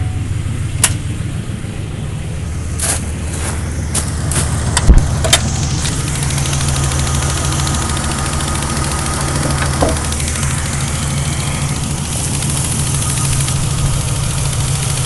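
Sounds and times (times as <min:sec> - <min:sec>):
engine idling with fast ticking: 0:00.0 - 0:15.0
sharp engine knocks: 0:03.9 - 0:15.0.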